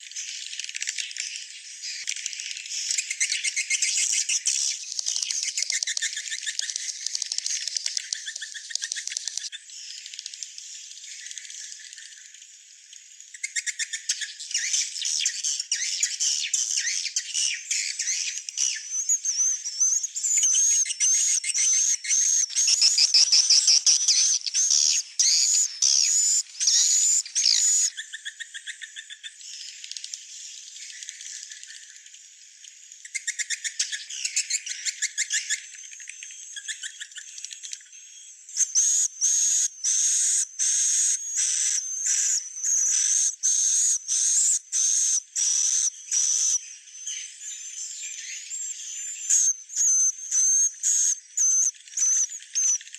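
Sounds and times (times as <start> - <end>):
swiftlet chirps and twittering: 15.8 - 28.8.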